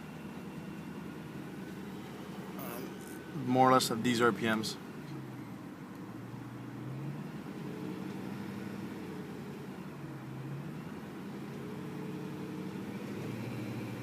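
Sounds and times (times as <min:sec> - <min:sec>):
car engine revving: 0:06.2 - 0:14.0.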